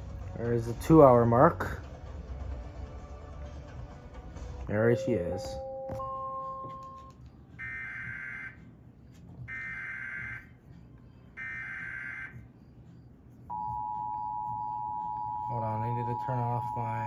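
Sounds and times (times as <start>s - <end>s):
two-tone attention signal: 5.0s - 7.0s, 13.5s - 17.0s.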